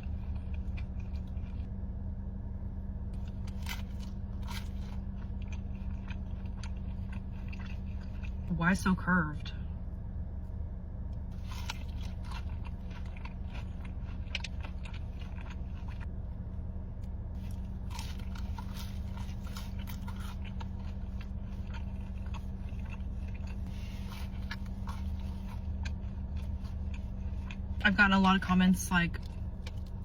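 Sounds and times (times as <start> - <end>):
chewing and biting food: 0.0 - 1.7, 3.1 - 8.6, 11.3 - 16.2, 17.4 - 28.6, 29.2 - 30.0
low hum: 0.0 - 30.0.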